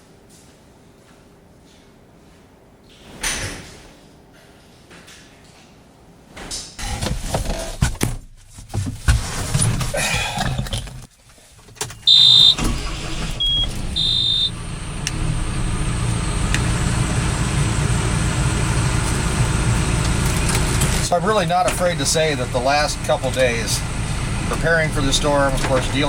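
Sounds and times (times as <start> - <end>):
knocks and rattles in cab: 6.8 - 14.1, 24.4 - 26.0
tractor engine running: 9.6 - 26.0
high electronic warning beeps: 12.1 - 14.6.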